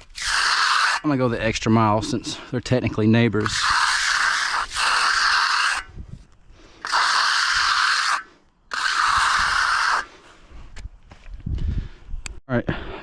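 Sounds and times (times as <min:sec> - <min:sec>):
steel trowel scraping concrete: 0:00.0 - 0:06.0, 0:06.8 - 0:10.2.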